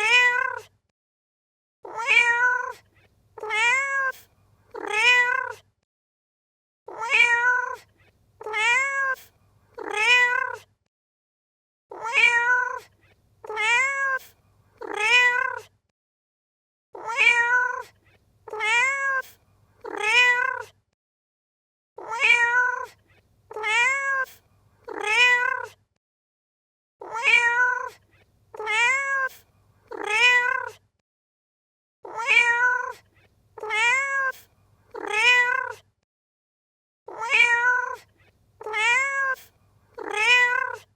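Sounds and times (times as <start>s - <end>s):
cat meowing: 0.0s - 0.7s, 1.8s - 2.8s, 3.4s - 5.6s, 6.9s - 10.7s, 11.9s - 15.7s, 17.0s - 20.7s, 22.0s - 25.8s, 27.0s - 30.8s, 32.1s - 33.0s, 33.6s - 35.8s, 37.1s - 40.9s.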